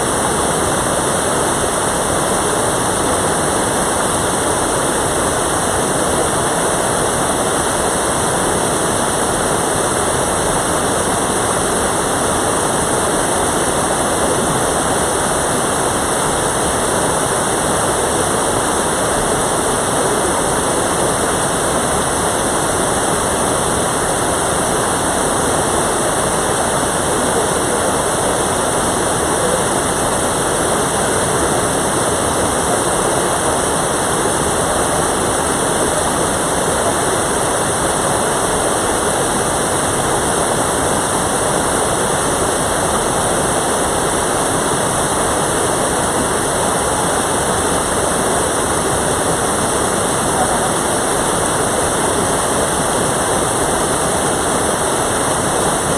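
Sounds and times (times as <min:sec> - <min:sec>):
stream water rushing: 0:00.0 - 0:55.9.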